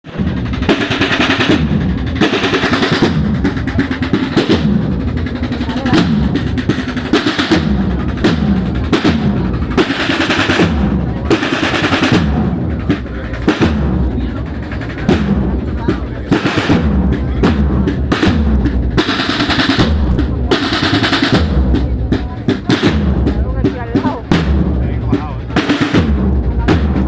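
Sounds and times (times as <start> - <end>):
marching band playing: 0.0 - 27.0
bass drum strokes: 0.1 - 27.0
snare drum rolls: 0.1 - 27.0.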